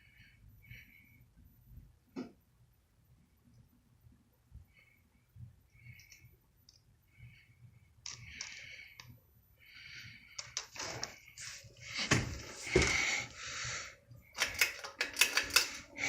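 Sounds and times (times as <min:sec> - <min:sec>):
ceiling fan clicking and rattling: 0:14.2 - 0:16.0.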